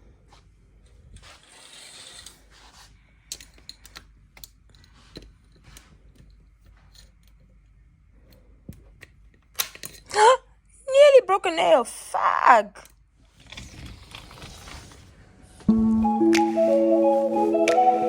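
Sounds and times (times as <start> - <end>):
soft rustle: 0.1 - 3.3.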